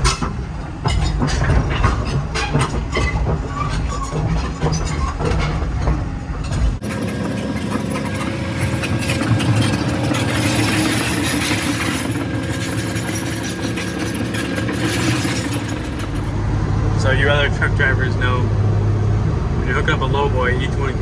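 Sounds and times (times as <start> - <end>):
heavy diesel engine running: 0.0 - 21.0
rattling and clanking: 0.0 - 21.0.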